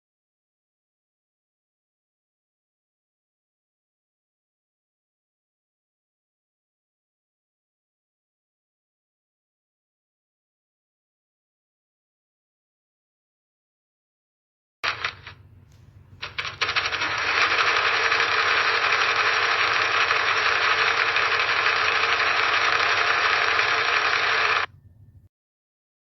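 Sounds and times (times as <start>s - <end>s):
sewing machine stitching: 14.8s - 15.4s, 16.2s - 24.7s
low hum: 15.1s - 25.3s.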